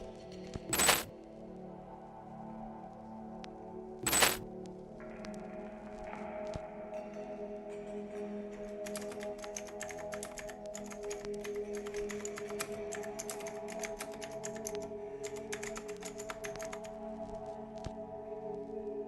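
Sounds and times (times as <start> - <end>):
calm ambient music: 0.0 - 19.0
typing on a keyboard: 0.7 - 1.1, 4.0 - 4.4, 8.8 - 16.9.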